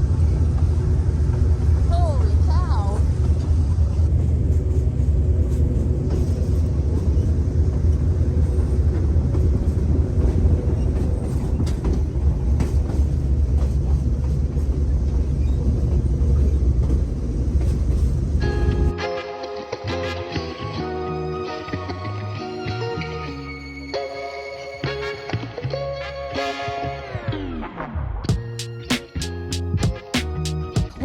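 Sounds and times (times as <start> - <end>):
train rumbling on track: 0.0 - 19.1.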